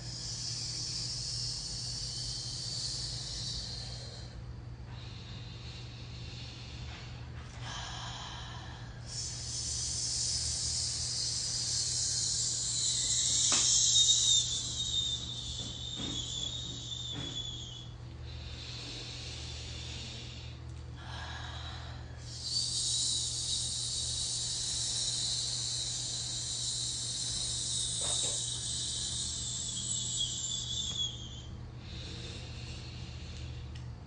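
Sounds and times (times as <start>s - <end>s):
person breathing in: 0.1s - 15.8s, 18.2s - 30.4s, 31.4s - 34.0s
person hissing: 7.7s - 17.8s, 21.0s - 33.3s.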